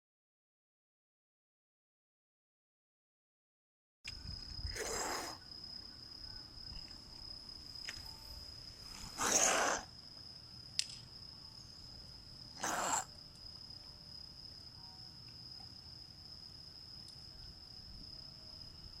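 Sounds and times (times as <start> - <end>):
cat sneezing: 4.7 - 5.4, 9.1 - 9.9, 12.6 - 13.1
sharp click: 10.8 - 11.1.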